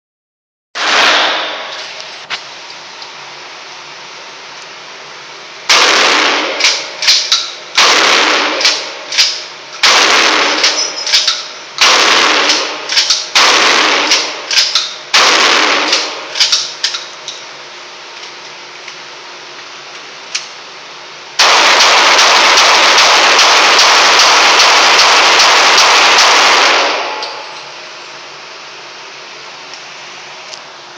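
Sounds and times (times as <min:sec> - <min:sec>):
gunshots with echo: 0:00.8 - 0:01.8, 0:05.7 - 0:09.2, 0:09.8 - 0:11.2, 0:11.8 - 0:16.4, 0:21.4 - 0:27.6
loud steady rushing noise: 0:21.4 - 0:28.2.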